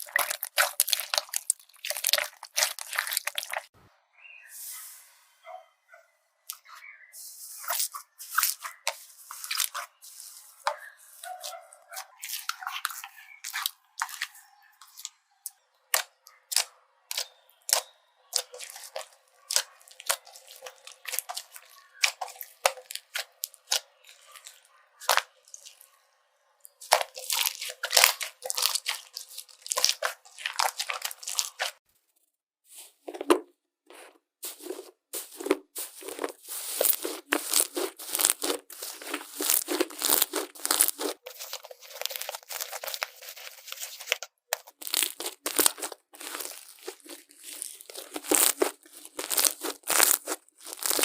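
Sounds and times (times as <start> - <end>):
slime popping and crackling: 0.0 - 3.7, 7.7 - 9.9, 15.9 - 25.9, 26.7 - 31.8, 34.5 - 51.0.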